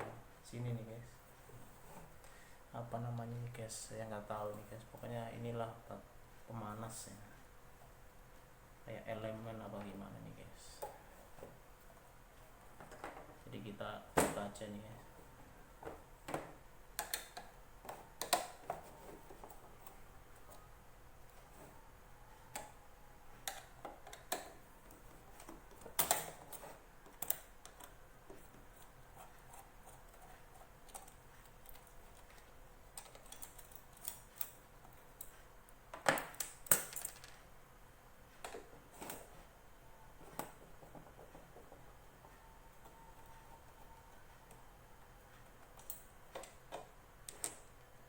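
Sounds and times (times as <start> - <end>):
tools and metal parts clicking: 30.8 - 35.4, 36.2 - 37.4.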